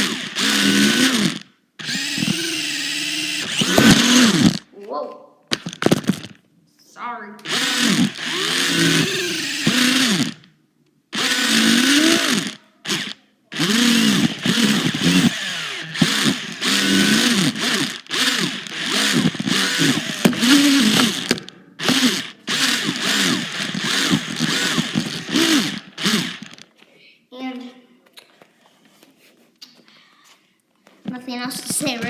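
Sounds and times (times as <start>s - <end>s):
toy car electric motor whining: 0.0s - 4.7s, 5.5s - 6.4s, 7.5s - 10.5s, 11.2s - 26.7s.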